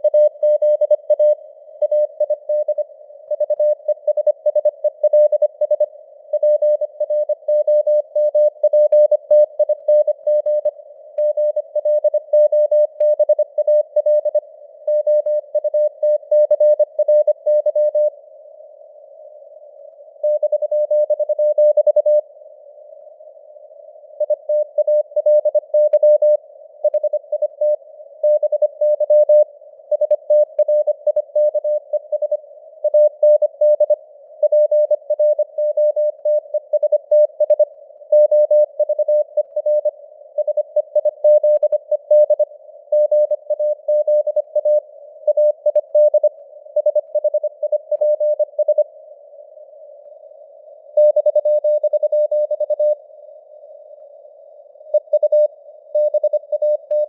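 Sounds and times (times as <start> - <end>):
morse code tone: 55.0 - 57.0.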